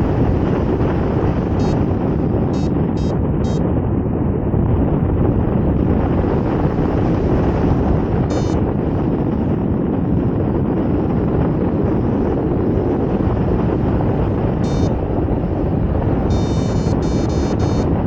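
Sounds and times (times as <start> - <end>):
wind buffeting microphone: 0.0 - 18.0
short high electronic beeps: 1.6 - 1.9, 2.6 - 3.6, 8.3 - 8.6, 14.6 - 15.0, 16.3 - 17.9.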